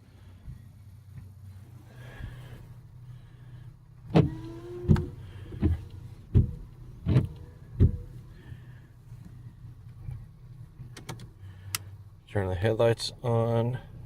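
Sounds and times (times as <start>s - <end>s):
low steady hum: 0.0s - 14.0s
cabin control clicks: 4.1s - 8.2s, 10.8s - 11.9s.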